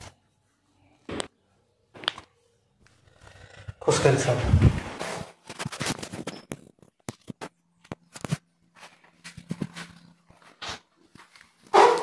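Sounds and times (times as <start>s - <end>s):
footsteps on hard floor: 8.7s - 12.0s.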